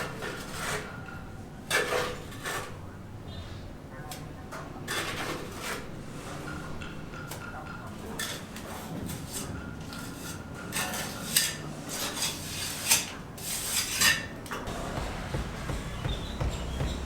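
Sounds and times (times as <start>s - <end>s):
sharp knocks: 14.6s - 17.0s.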